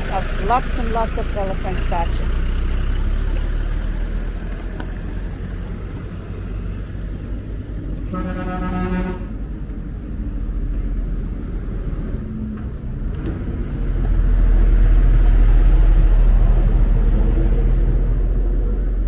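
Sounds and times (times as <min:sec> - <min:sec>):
car rumbling on the move: 0:00.0 - 0:19.0
vehicle horn: 0:08.1 - 0:09.4.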